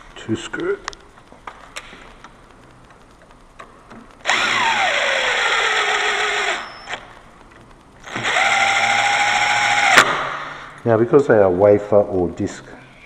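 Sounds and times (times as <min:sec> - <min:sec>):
power drill driving screws: 0:04.2 - 0:07.1, 0:08.0 - 0:10.6.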